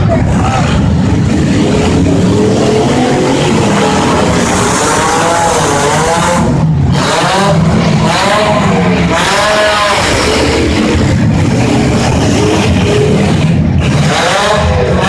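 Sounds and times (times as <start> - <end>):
car engines revving hard: 0.0 - 15.0.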